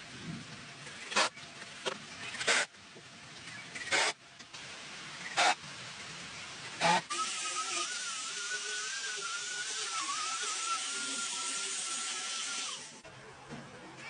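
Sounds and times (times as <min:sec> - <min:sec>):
high-speed power tool whine: 0:06.8 - 0:13.0.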